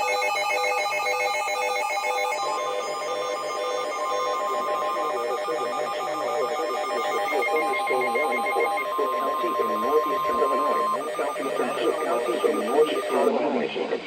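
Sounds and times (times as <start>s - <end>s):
rapid electronic beeps: 0.0s - 13.3s
steady electronic tone: 1.2s - 13.3s
wavering background sound: 1.2s - 13.3s.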